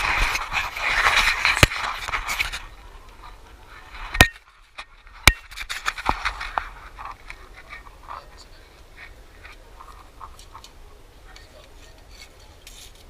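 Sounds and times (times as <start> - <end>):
rustling and scraping: 0.0 - 13.0
sharp ringing knocks: 4.2 - 4.4.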